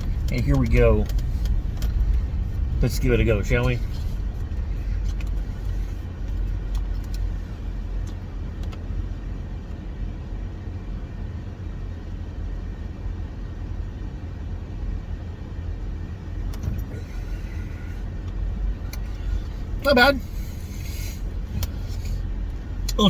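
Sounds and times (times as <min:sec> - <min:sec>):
faint clicks and taps: 0:00.0 - 0:02.3
car engine rumble inside cabin: 0:00.0 - 0:23.0.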